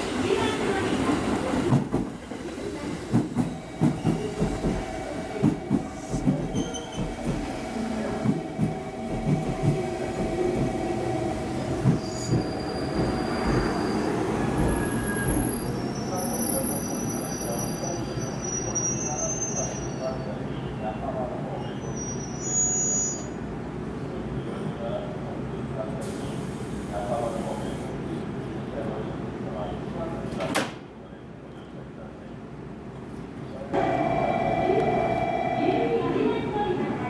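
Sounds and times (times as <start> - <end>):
train wheels knocking over rail joints: 3.1 - 7.6
wheel and brake squeal: 11.9 - 20.3, 21.6 - 23.4.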